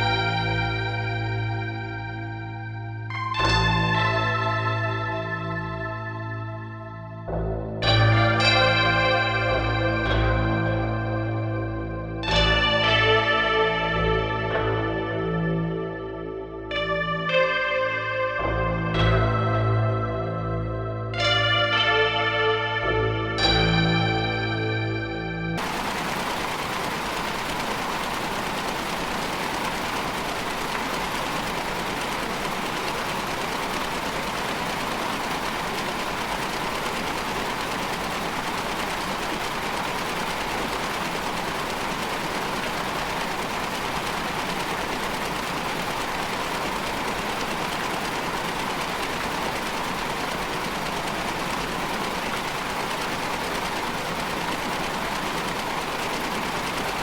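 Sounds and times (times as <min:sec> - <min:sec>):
machine-like noise drone: 0:25.6 - 0:57.0.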